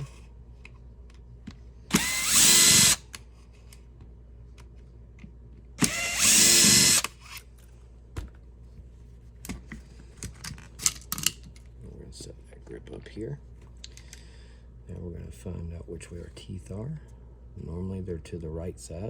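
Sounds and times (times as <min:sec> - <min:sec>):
cordless power driver motor: 0:01.9 - 0:03.2, 0:05.8 - 0:07.4.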